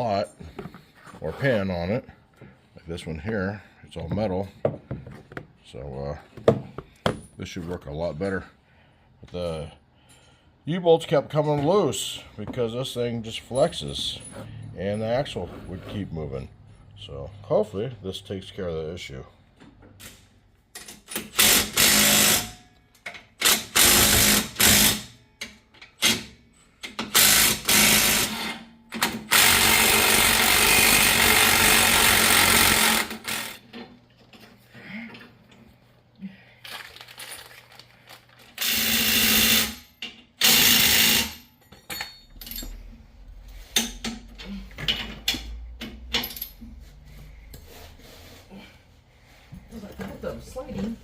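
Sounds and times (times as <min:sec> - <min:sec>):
clanking tools and parts: 0:11.2 - 0:17.2, 0:19.6 - 0:35.8, 0:36.6 - 0:47.7
power wrench bursts: 0:21.1 - 0:22.6, 0:23.4 - 0:25.1, 0:26.9 - 0:33.6, 0:38.6 - 0:41.5.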